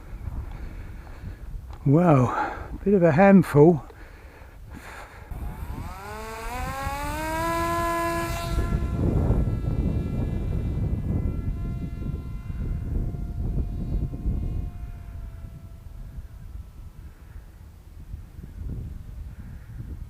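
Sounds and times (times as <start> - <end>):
wind rumbling on microphone: 0.0 - 20.0
model plane motor whining: 4.8 - 17.6.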